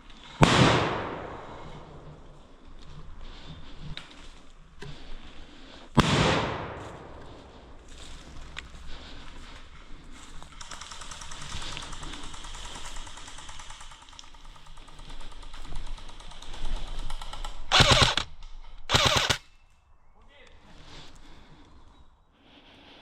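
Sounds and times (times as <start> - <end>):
airsoft guns firing automatic: 0.4 - 2.0, 10.6 - 18.3, 18.9 - 19.4
loud short gun bursts: 17.7 - 18.3, 18.9 - 19.4.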